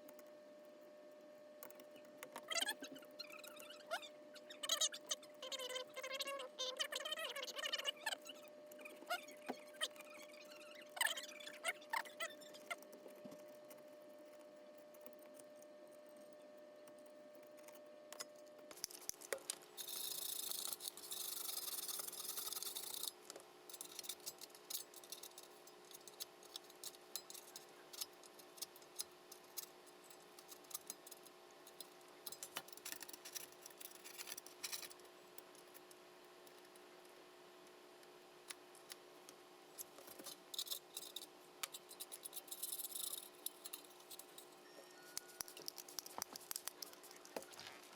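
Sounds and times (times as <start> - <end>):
small tools clicking and scraping: 17.5 - 35.9, 39.8 - 44.6, 45.2 - 47.9
scratchy rubbing: 19.8 - 23.1.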